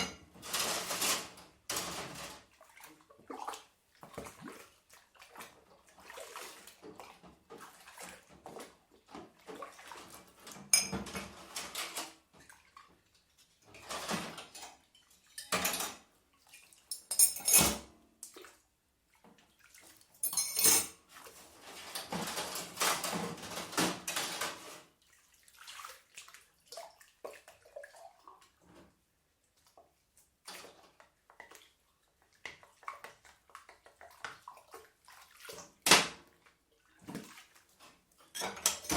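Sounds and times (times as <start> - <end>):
dishes and cutlery clinking: 0.0 - 2.4, 10.4 - 12.2, 13.8 - 16.1, 16.9 - 17.9, 20.2 - 21.0, 21.6 - 24.8, 38.3 - 38.9
water running in a sink: 0.0 - 38.9.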